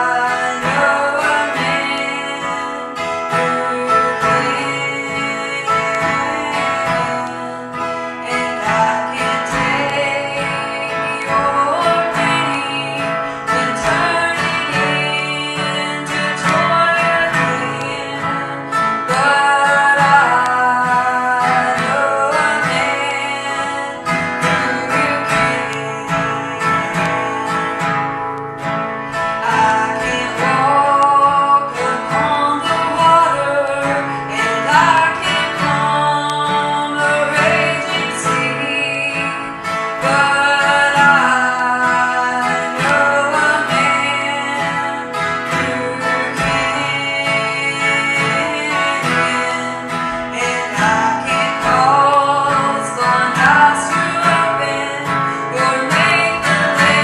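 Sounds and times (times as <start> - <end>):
person singing: 0.0 - 57.0
strummed acoustic guitar: 0.0 - 57.0.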